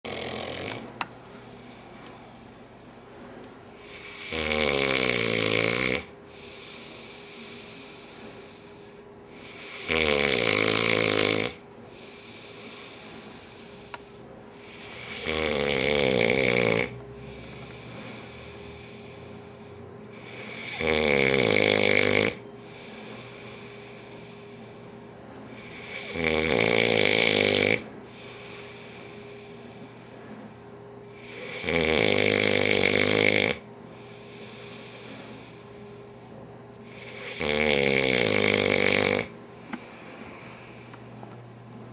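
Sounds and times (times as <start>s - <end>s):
man snoring loudly: 0.1s - 0.8s, 3.8s - 7.8s, 9.4s - 13.0s, 14.6s - 19.2s, 20.1s - 24.3s, 25.5s - 29.1s, 31.2s - 33.6s, 36.9s - 39.3s.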